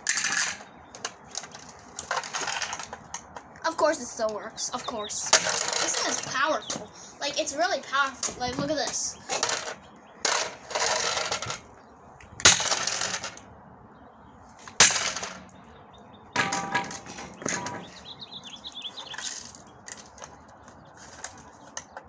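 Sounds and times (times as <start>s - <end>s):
plastic rattling clatter: 0.1s - 3.5s, 5.3s - 6.8s, 8.2s - 11.7s, 12.4s - 13.4s, 16.4s - 18.0s.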